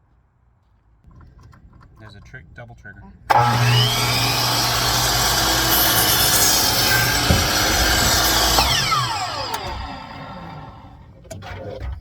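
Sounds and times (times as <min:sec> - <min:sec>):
electric saw cutting wood: 0:03.3 - 0:11.0.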